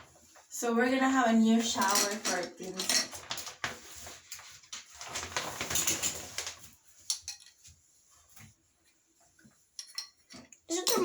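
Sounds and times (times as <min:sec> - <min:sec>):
shower curtain rings clattering: 0:01.4 - 0:08.5, 0:09.8 - 0:11.0.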